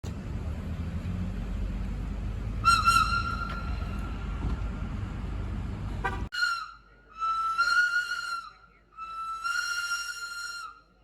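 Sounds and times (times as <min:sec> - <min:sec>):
train rumbling: 0:00.0 - 0:06.6
high train whistle: 0:02.6 - 0:04.2, 0:06.1 - 0:10.9.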